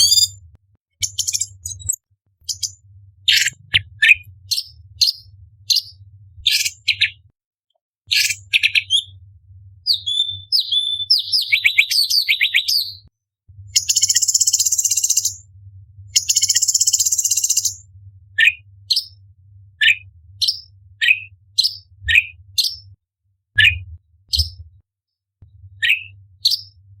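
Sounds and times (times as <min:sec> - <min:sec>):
bird singing chips and whistles: 0:00.0 - 0:00.4, 0:01.0 - 0:02.7, 0:09.9 - 0:13.0, 0:13.8 - 0:15.4, 0:16.2 - 0:17.8.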